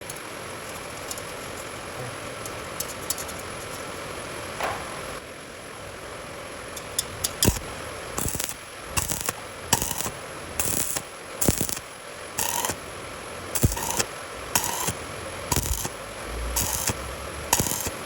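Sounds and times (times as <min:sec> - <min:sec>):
loud knock: 0:04.6 - 0:05.0
arc welding crackling hiss: 0:06.8 - 0:18.0.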